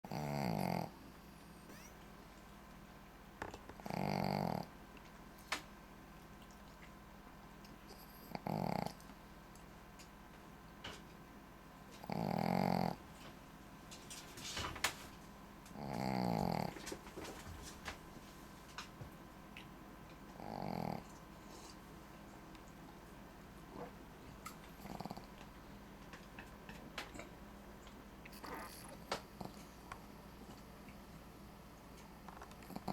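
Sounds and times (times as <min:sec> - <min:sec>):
dog snoring: 0:00.1 - 0:01.8, 0:03.8 - 0:04.7, 0:07.9 - 0:09.0, 0:12.0 - 0:13.0, 0:15.7 - 0:17.0, 0:20.4 - 0:21.8, 0:24.7 - 0:25.4, 0:28.3 - 0:29.7, 0:32.4 - 0:32.9.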